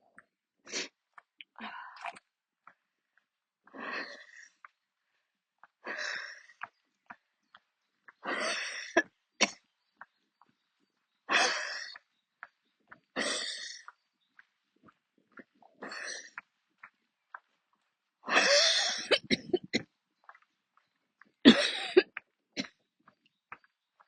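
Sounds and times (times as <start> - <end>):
woman coughing: 18.3 - 19.8, 21.5 - 22.1.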